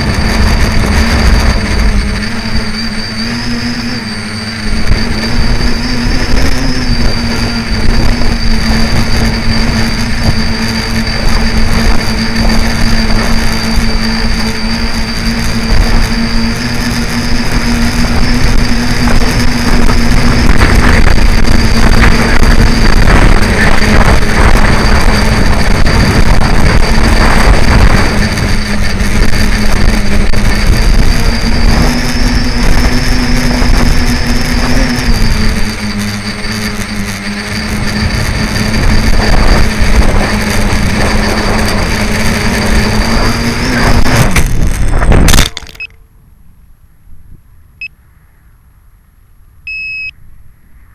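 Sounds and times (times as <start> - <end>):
wind buffeting microphone: 0.0 - 45.6
drone motors whining: 0.0 - 46.0.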